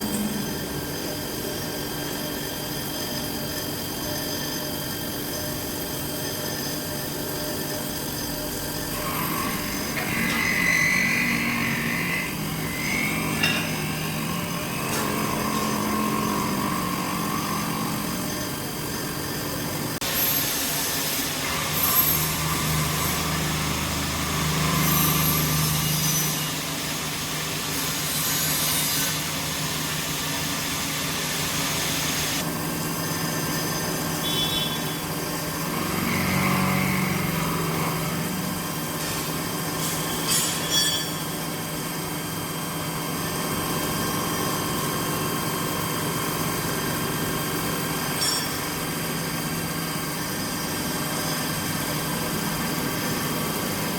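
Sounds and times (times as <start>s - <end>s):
machine hum: 0.0s - 28.4s
milling cutter cutting workpiece: 0.0s - 32.4s, 33.5s - 41.5s.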